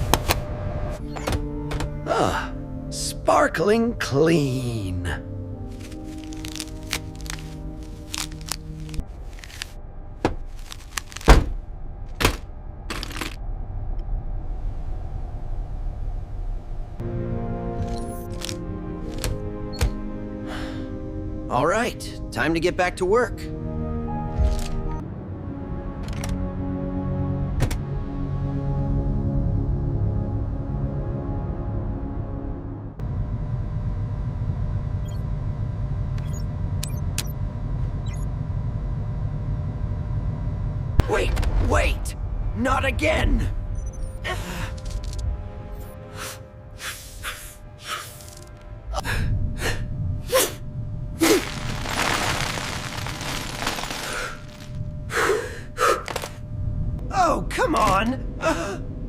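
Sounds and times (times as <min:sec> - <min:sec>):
background music: 0:00.0 - 0:11.3, 0:17.0 - 0:33.0, 0:41.0 - 0:50.6
low cabin rumble: 0:00.0 - 0:17.6, 0:32.8 - 0:45.7, 0:48.4 - 0:59.0
low hum: 0:00.0 - 0:59.0.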